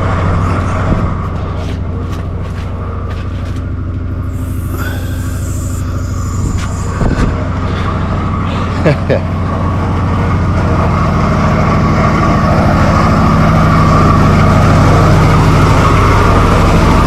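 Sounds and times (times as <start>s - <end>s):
engine idling: 0.0s - 17.0s.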